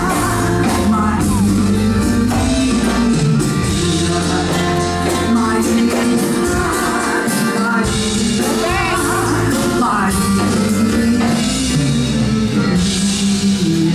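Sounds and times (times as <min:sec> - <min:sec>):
bass notes: 0:00.0 - 0:13.9
drums: 0:00.0 - 0:13.9
person singing a melody: 0:00.0 - 0:13.9.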